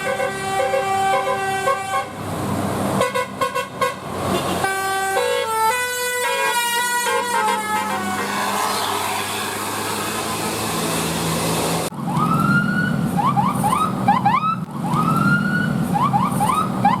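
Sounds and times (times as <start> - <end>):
heavy vehicle engine: 0.0 - 17.0
road noise: 0.0 - 17.0
electronic siren wailing and yelping: 11.9 - 17.0.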